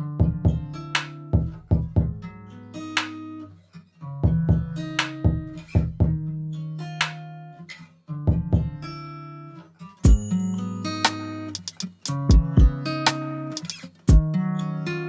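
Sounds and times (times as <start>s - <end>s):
drum beat: 0.2s - 0.7s, 1.4s - 2.2s, 4.2s - 6.2s, 8.3s - 8.8s, 10.0s - 10.4s, 11.1s - 14.3s
plucked guitar notes: 10.0s - 15.0s.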